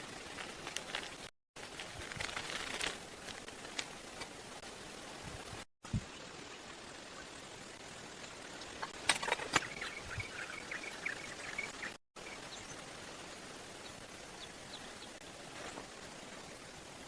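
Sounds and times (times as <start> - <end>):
outdoor background hiss: 0.0 - 17.0.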